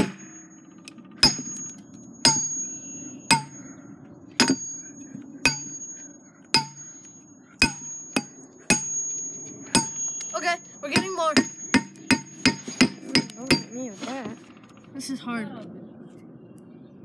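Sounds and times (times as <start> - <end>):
hammer striking glass bottle: 1.2 - 3.6, 4.4 - 4.9, 5.5 - 6.0, 6.6 - 10.4, 11.0 - 13.8.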